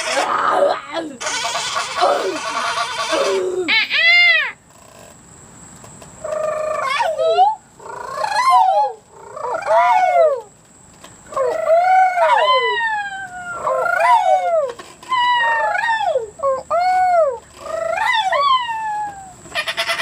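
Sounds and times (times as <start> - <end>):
person imitating animal calls: 0.0 - 4.5.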